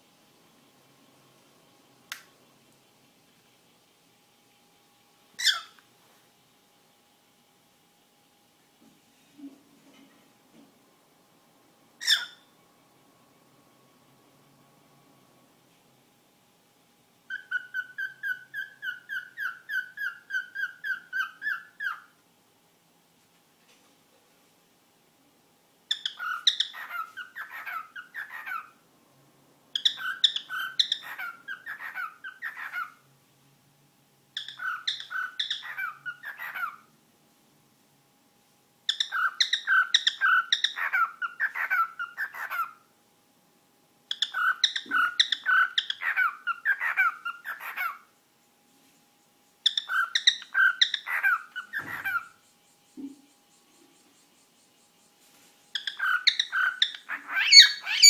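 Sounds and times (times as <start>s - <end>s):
bird chirping rapidly: 17.3s - 22.1s, 25.9s - 28.7s, 29.8s - 33.0s, 34.4s - 36.9s, 38.9s - 42.7s, 44.1s - 48.0s, 49.6s - 58.0s.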